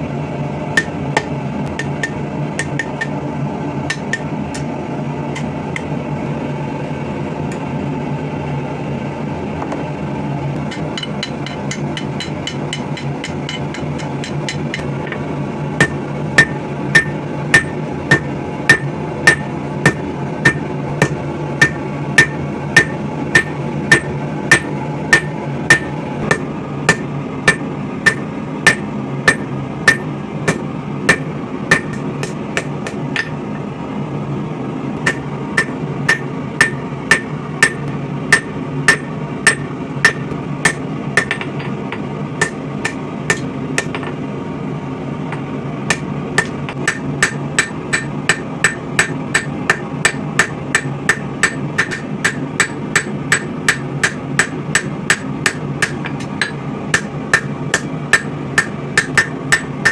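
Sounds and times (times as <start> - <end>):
steady low hum: 0.0 - 59.9
hammer ringing on anvil: 0.8 - 3.2, 3.9 - 4.7, 10.6 - 15.2, 15.8 - 33.4, 35.0 - 41.7, 42.4 - 44.1, 45.9 - 59.9.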